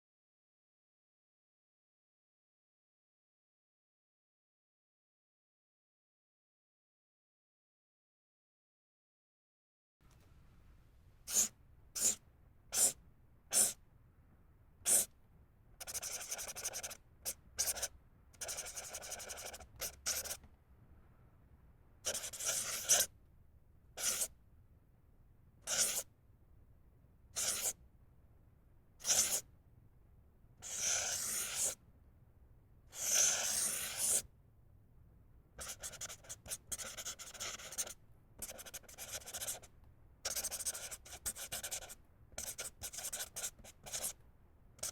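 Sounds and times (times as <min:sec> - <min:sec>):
marker pen writing strokes: 0:11.3 - 0:13.8, 0:14.8 - 0:15.1, 0:15.8 - 0:20.5, 0:22.0 - 0:23.1, 0:24.0 - 0:24.3, 0:25.6 - 0:26.1, 0:27.4 - 0:27.8, 0:29.0 - 0:29.5, 0:30.6 - 0:31.8, 0:32.9 - 0:34.3, 0:35.6 - 0:44.2
marker scribbling: 0:11.3 - 0:13.8, 0:14.8 - 0:15.1, 0:15.8 - 0:20.4, 0:22.0 - 0:23.1, 0:24.0 - 0:24.3, 0:25.6 - 0:26.1, 0:27.4 - 0:27.8, 0:29.0 - 0:29.4, 0:30.6 - 0:31.8, 0:32.9 - 0:34.2, 0:35.6 - 0:44.2.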